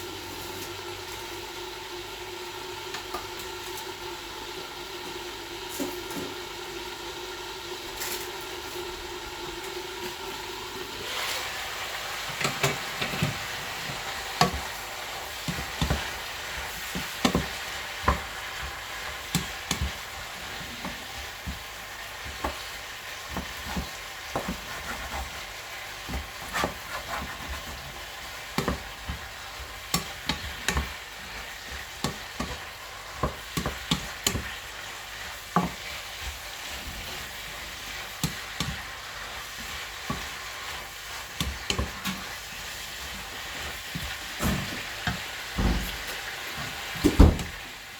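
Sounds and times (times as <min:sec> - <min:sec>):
food sizzling in a pan: 0:00.0 - 0:47.9
spatula scraping a pan: 0:11.0 - 0:46.9.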